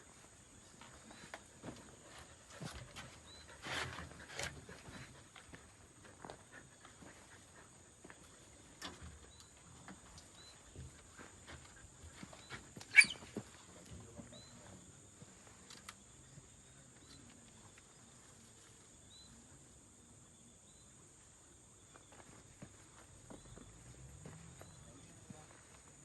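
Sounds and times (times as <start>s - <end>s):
faint short chirps: 12.9s - 13.2s.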